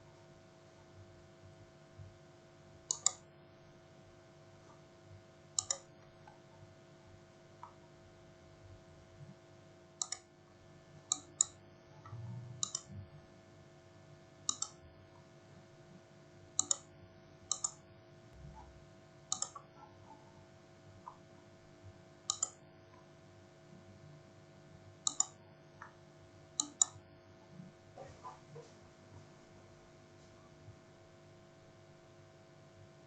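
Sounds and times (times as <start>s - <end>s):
low electrical hum: 0.0s - 33.0s
computer mouse clicking: 2.9s - 3.2s, 5.6s - 6.4s, 10.0s - 10.3s, 11.1s - 13.0s, 14.5s - 14.8s, 16.6s - 16.9s, 17.5s - 17.8s, 19.3s - 20.2s, 22.2s - 22.6s, 25.0s - 26.0s, 26.6s - 27.0s.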